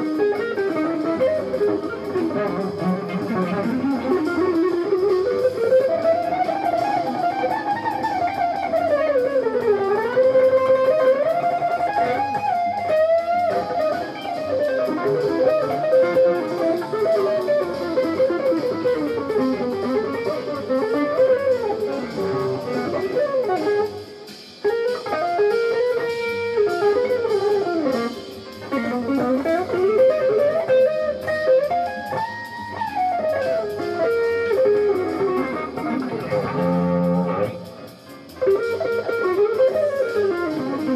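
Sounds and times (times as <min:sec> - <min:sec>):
jazz fusion electric guitar melody: 0:00.0 - 0:40.9.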